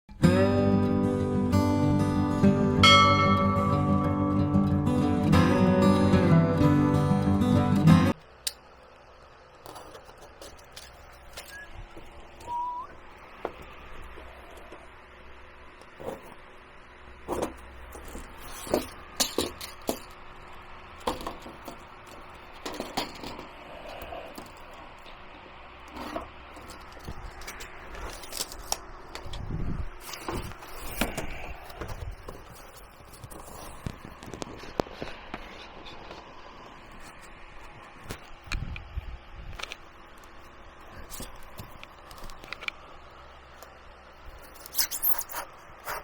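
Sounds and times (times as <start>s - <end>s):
objects being handled: 9.6s - 15.0s, 15.7s - 38.6s, 39.6s - 46.0s.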